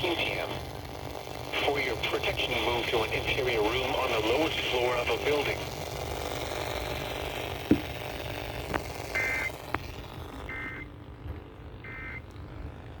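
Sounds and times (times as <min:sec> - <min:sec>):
harsh digital squawks: 0:09.1 - 0:09.6.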